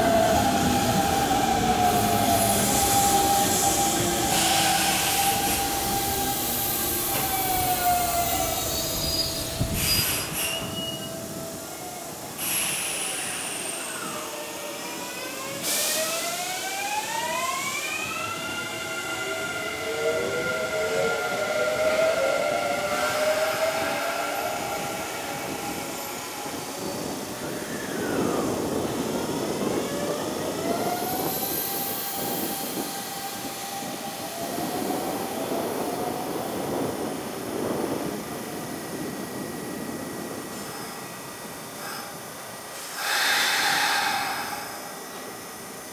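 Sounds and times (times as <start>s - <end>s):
train wheel and running noise: 0.0s - 45.9s
air hiss: 1.5s - 11.1s, 12.2s - 14.2s, 41.8s - 45.7s.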